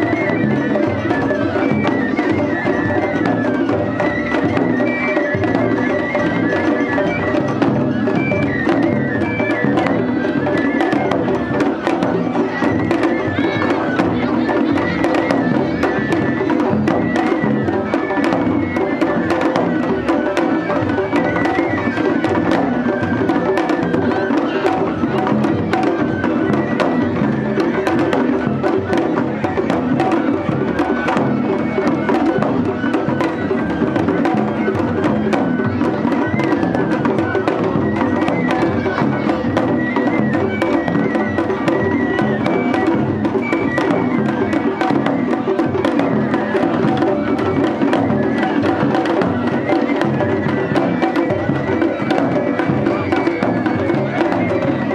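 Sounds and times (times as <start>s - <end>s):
fast festival drumming: 0.0s - 54.9s
high wind instrument melody: 0.0s - 54.9s.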